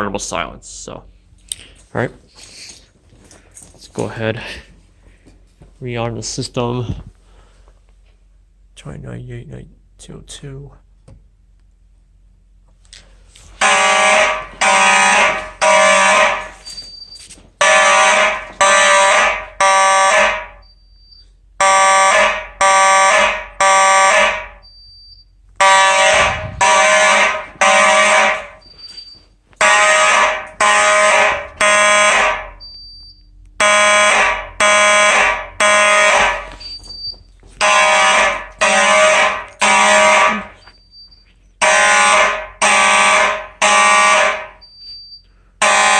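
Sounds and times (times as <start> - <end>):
fire alarm horns: 13.4 - 45.9.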